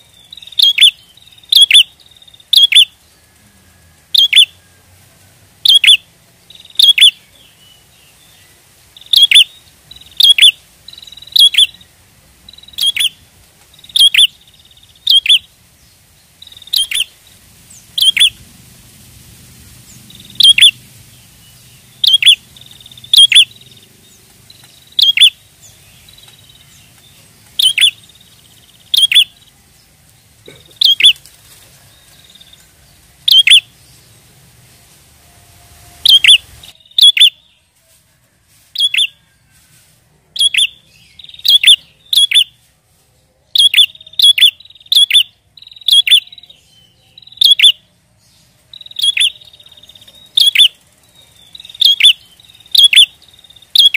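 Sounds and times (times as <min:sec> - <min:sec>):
bird chirping calls: 0:00.0 - 0:05.0, 0:05.6 - 0:18.7, 0:19.8 - 0:34.7, 0:35.8 - 0:37.7, 0:38.7 - 0:53.9.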